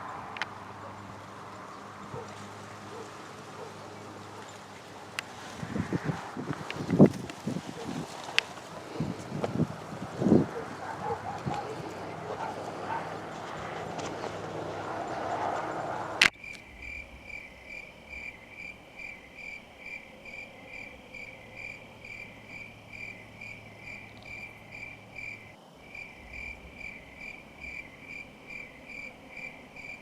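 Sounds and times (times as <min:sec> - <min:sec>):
rushing noise: 0:00.0 - 0:21.1
cricket chirping: 0:00.0 - 0:30.0.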